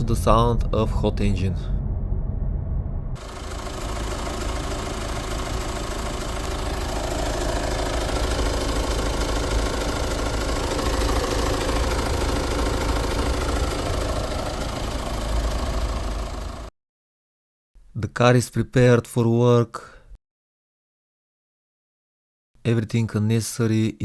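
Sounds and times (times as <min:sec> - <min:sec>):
diesel engine idling: 0:03.2 - 0:16.7.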